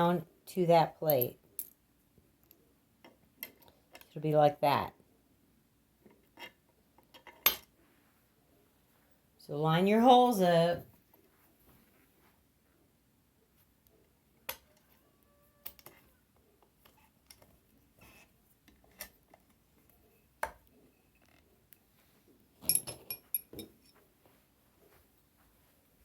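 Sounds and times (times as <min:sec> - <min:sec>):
metal parts clicking and knocking: 0:22.6 - 0:23.9.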